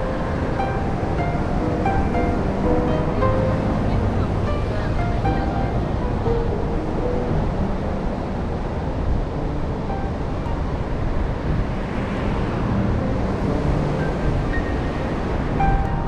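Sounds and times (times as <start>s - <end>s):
quiet background music: 0.0s - 16.0s
surf: 0.0s - 16.0s
wind: 0.0s - 16.0s
road traffic: 9.9s - 16.0s.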